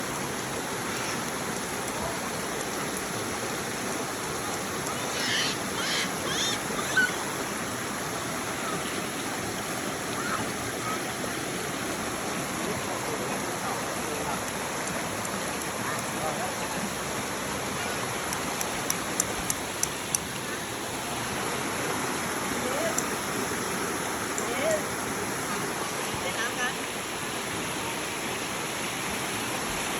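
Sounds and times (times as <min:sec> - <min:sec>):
flowing water rushing: 0:00.0 - 0:29.9
short high-pitched calls: 0:05.0 - 0:07.2.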